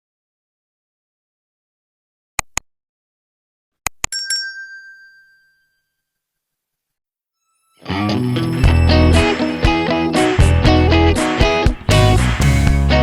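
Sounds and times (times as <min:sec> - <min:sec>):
bell-like ding: 0:04.1 - 0:06.2, 0:07.5 - 0:10.1.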